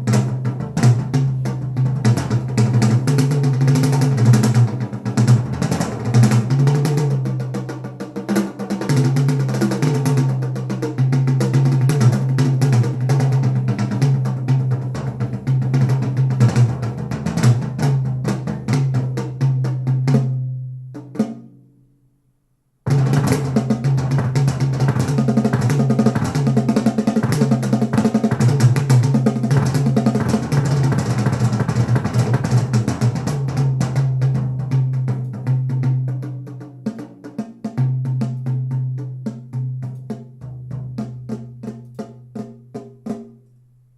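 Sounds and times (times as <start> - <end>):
drum-heavy music with bass line: 22.9 - 36.0.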